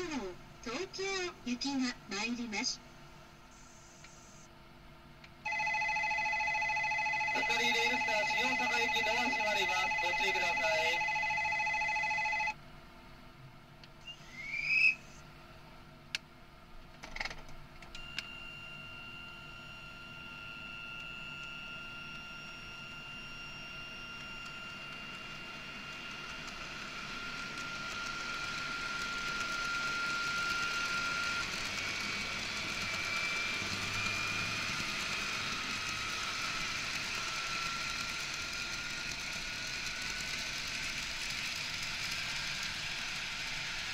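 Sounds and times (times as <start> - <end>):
train inverter whining: 5.3 - 12.6, 13.9 - 15.3, 17.9 - 43.9.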